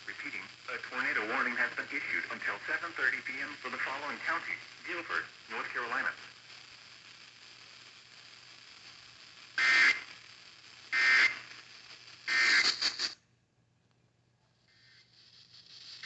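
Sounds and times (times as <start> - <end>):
radio hiss: 0.0 - 13.3, 14.5 - 16.0
raspy two-tone data chirp: 12.2 - 13.2.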